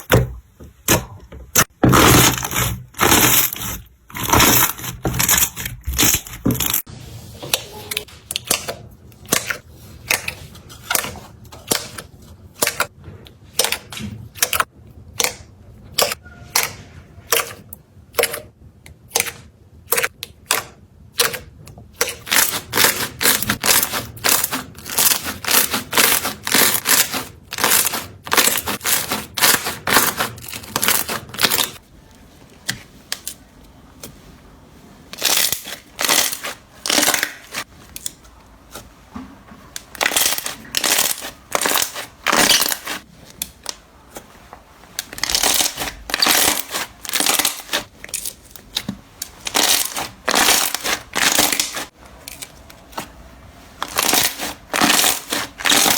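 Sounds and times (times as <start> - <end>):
slime crackling and popping: 53.8 - 55.9.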